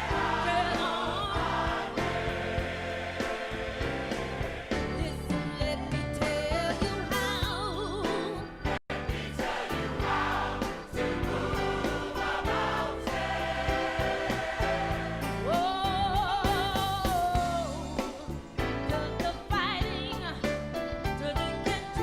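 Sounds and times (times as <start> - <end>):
gospel choir singing: 0.0 - 5.6, 8.5 - 18.4
live band with drums: 8.9 - 22.0.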